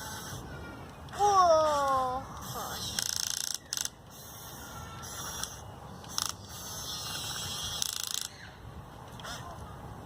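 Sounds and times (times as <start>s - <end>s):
geared mechanism buzzing: 2.4s - 8.4s.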